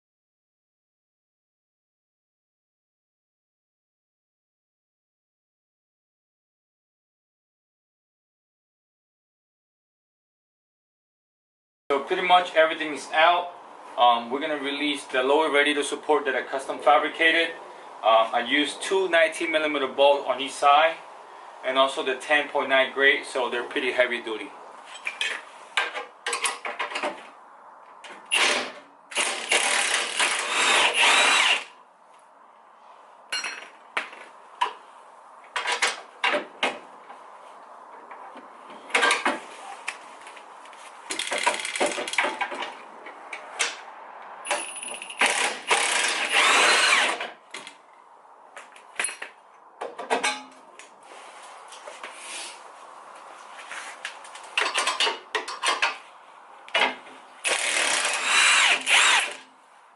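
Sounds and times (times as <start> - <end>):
cordless power tool motor: 29.2 - 31.7, 45.2 - 47.2, 57.4 - 59.4.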